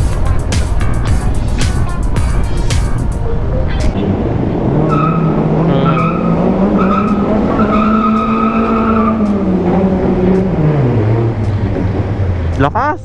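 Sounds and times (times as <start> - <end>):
tires squealing: 3.9 - 12.6
engine revving hard: 4.0 - 12.6.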